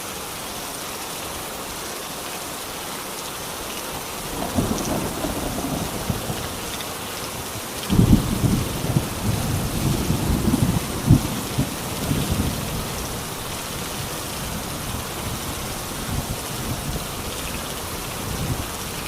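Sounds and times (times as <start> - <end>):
steady rain: 0.0 - 19.0
thunder rumbling: 4.4 - 17.2.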